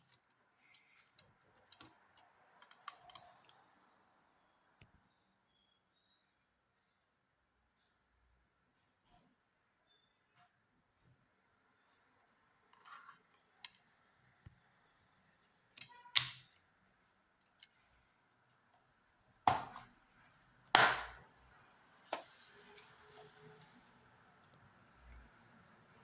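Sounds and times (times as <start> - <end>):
sharp plastic snaps: 20.7 - 21.2.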